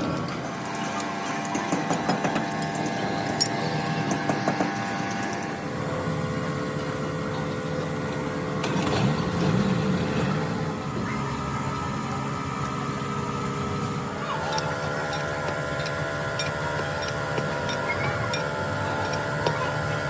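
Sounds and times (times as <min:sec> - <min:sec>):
machine humming: 0:00.0 - 0:20.0
wavering tone: 0:14.0 - 0:20.0.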